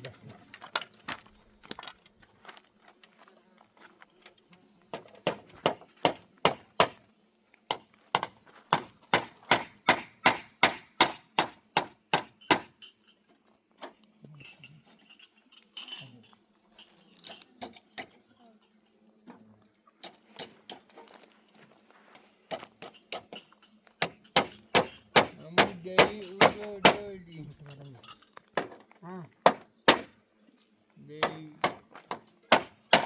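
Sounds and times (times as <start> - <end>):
hammer driving nails into timber: 5.0 - 7.0, 7.7 - 12.7, 24.0 - 27.1, 29.4 - 30.2, 31.2 - 33.0.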